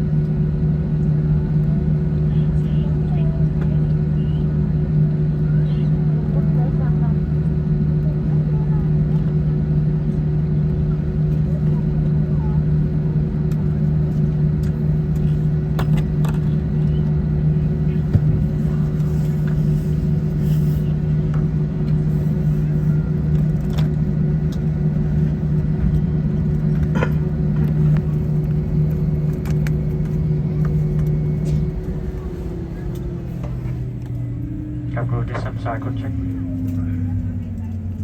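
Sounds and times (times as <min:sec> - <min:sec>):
airliner engine hum in cabin: 0:00.0 - 0:38.0.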